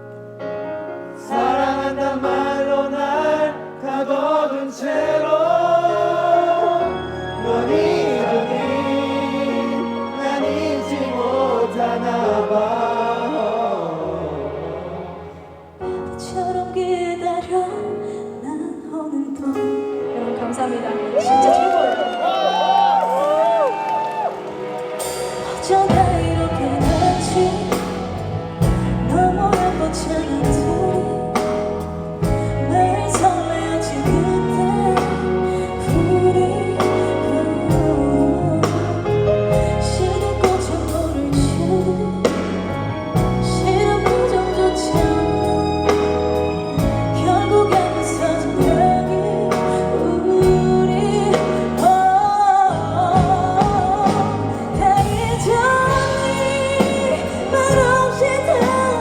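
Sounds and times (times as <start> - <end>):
live band playing pop ballad: 5.0 - 13.1, 19.2 - 59.0
person singing: 16.2 - 59.0.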